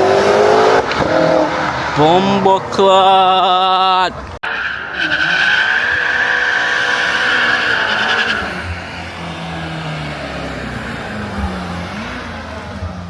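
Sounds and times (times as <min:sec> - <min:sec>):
car engine revving: 0:00.0 - 0:13.0
tire squeal: 0:04.4 - 0:13.0.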